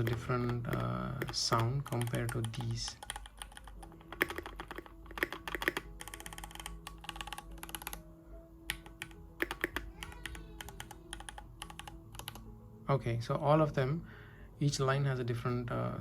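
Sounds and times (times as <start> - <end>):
mechanical keyboard keys clacking: 0.0 - 8.0, 8.7 - 12.5.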